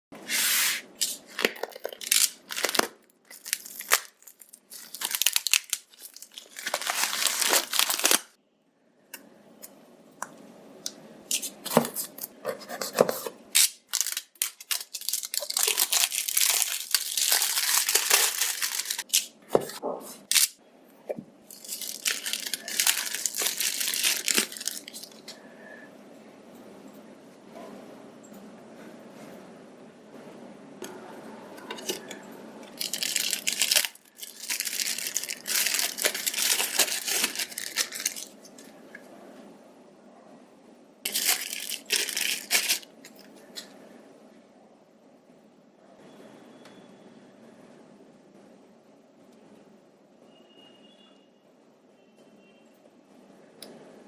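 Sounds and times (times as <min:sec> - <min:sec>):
packaging tearing and crinkling: 0:01.0 - 0:08.4, 0:12.7 - 0:19.6, 0:20.2 - 0:20.6, 0:21.5 - 0:25.2, 0:32.7 - 0:38.4, 0:41.1 - 0:43.0.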